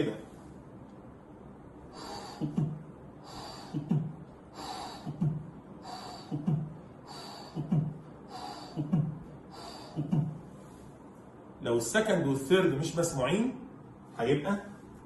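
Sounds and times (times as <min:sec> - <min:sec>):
soft hissing heart murmur: 0:01.8 - 0:11.0.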